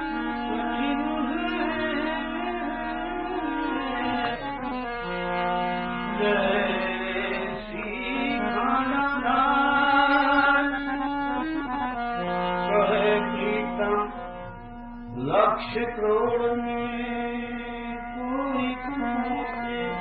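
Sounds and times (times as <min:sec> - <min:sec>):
harmonium devotional melody: 0:00.0 - 0:20.0.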